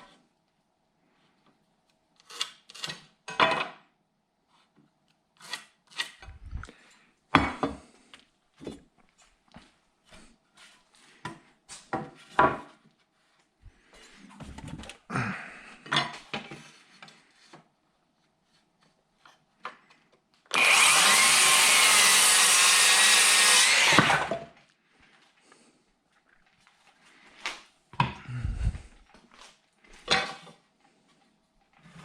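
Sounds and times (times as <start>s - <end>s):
power saw cutting board: 20.5s - 24.4s.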